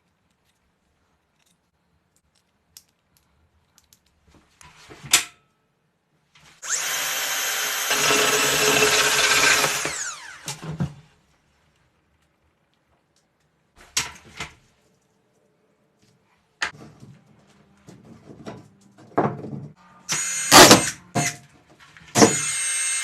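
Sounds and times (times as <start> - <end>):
electric drill running: 6.6 - 10.5, 20.1 - 21.0, 22.2 - 23.0.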